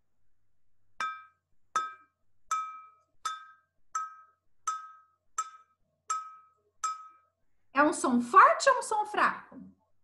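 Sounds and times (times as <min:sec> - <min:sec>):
glass tumbler taps ringing: 0:01.0 - 0:07.3.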